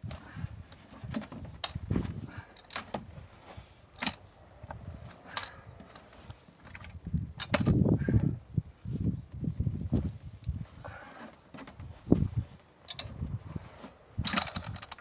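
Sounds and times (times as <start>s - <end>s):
heavy thuds and scraping: 0.0s - 8.4s, 9.8s - 15.0s
post-hole digger clinking in soil: 3.9s - 4.3s, 5.2s - 7.8s, 14.2s - 15.0s.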